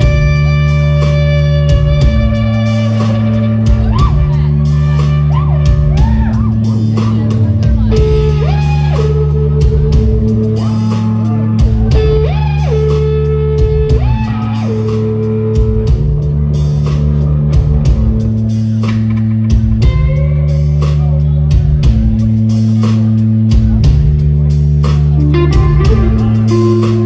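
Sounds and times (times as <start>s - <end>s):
bass line: 0.0s - 27.0s
drums: 0.0s - 27.0s
electric guitar lead: 0.0s - 27.0s.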